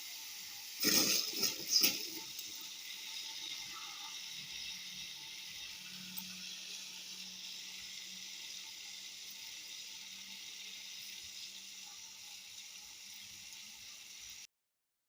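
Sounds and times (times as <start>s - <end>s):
running water hiss: 0.0s - 14.5s.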